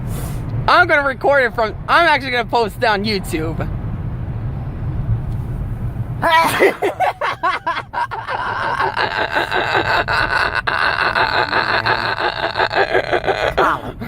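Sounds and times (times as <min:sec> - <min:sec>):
loud vocal outburst: 0:06.2 - 0:06.9, 0:10.6 - 0:14.0
high-pitched giggling laughter: 0:06.2 - 0:13.7.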